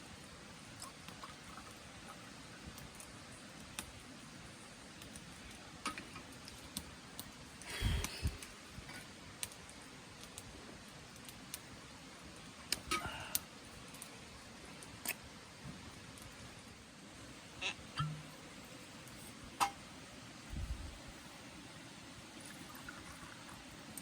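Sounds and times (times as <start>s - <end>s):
small clicks and ticks: 0.6s - 16.8s.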